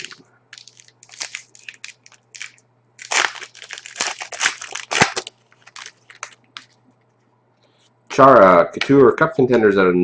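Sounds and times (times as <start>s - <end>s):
foil wrapper crinkling: 0.0s - 6.8s
cards rustling: 0.6s - 6.7s.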